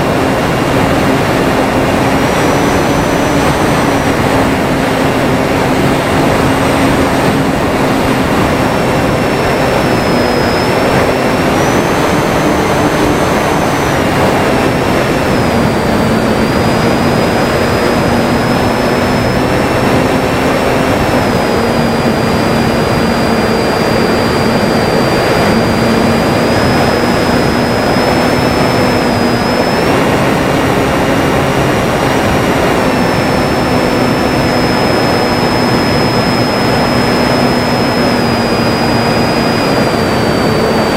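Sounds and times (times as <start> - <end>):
loud steady rushing noise: 0.0 - 40.9
model plane motor whining: 0.0 - 40.9.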